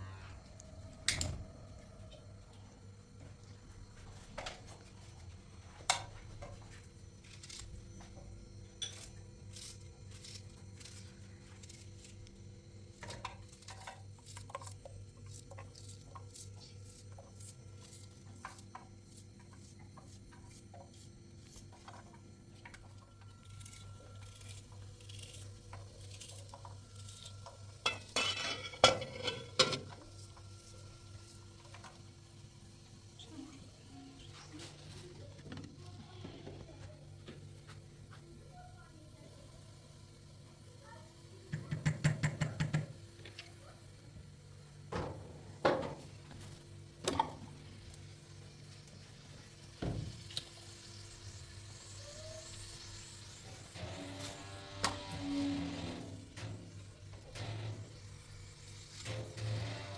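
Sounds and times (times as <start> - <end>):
dishes and utensils clinking: 27.8 - 29.9.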